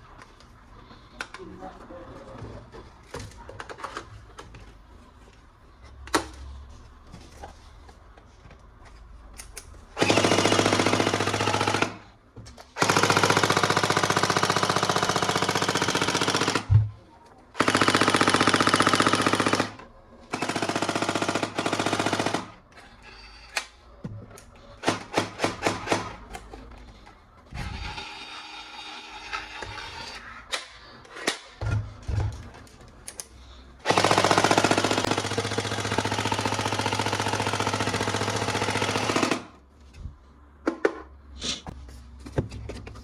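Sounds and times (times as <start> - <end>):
toy gun electronic rapid-fire: 10.0 - 12.0.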